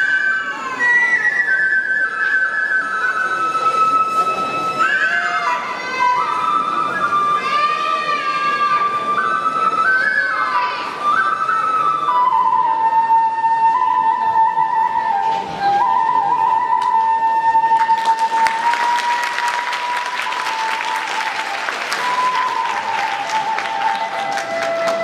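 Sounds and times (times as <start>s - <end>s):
flute long held notes: 0.0s - 25.0s
audience applause: 17.9s - 25.0s.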